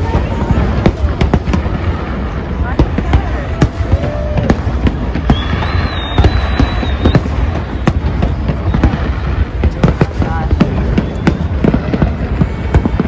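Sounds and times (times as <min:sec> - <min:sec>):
fireworks cracks and bangs: 0:00.0 - 0:13.0
high firework whistle: 0:03.4 - 0:10.0, 0:10.6 - 0:12.9.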